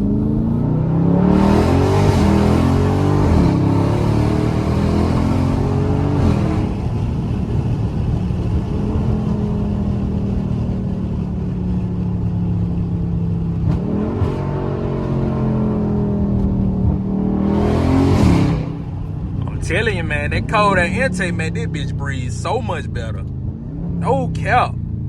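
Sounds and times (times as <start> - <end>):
car engine revving: 0.0 - 9.7.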